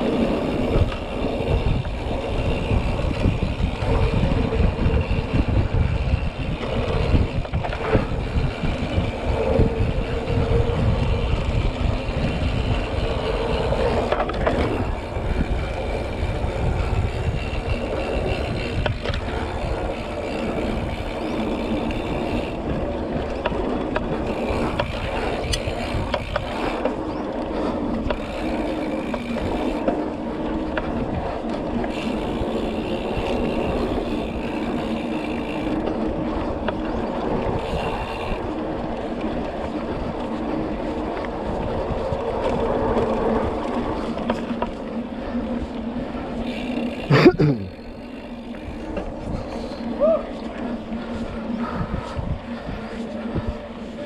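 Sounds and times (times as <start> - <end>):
bike rattling over bumps: 0.0 - 54.0
bike tyres rolling on dirt: 0.0 - 54.0
wind rumbling on microphone: 0.0 - 54.0.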